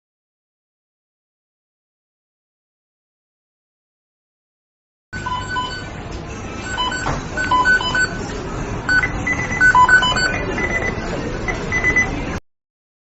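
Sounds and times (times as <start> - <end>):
short electronic beeps: 5.2 - 5.9, 6.6 - 8.2, 8.9 - 12.2
noisy kitchen background: 5.2 - 12.4.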